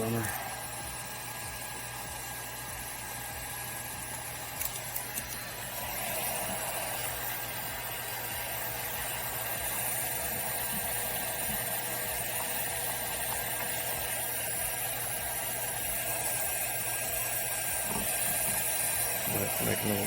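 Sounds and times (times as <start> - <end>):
heat gun blowing: 0.0 - 20.0.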